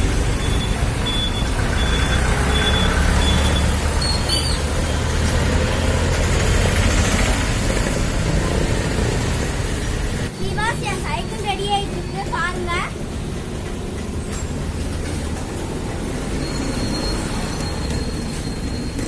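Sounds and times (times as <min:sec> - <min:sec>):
reversing alarm beeping: 0:00.0 - 0:05.2, 0:16.2 - 0:19.0.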